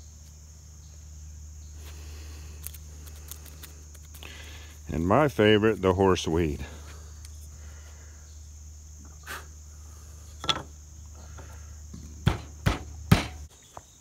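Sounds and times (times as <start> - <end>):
crickets trilling: 0.0 - 14.0
sharp knocks: 12.2 - 13.4.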